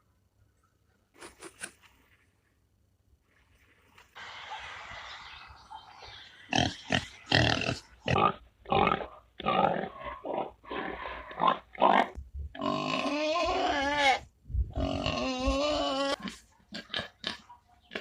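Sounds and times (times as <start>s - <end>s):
pigs grunting and squealing: 4.8s - 18.0s.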